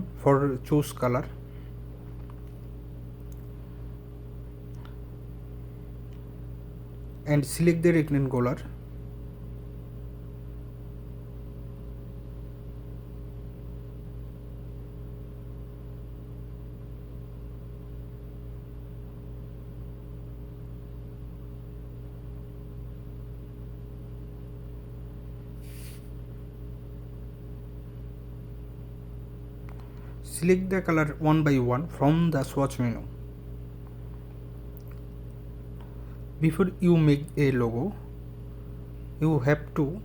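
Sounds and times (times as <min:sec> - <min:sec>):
low background hum: 0:00.0 - 0:40.0
brief high hiss: 0:25.6 - 0:26.1.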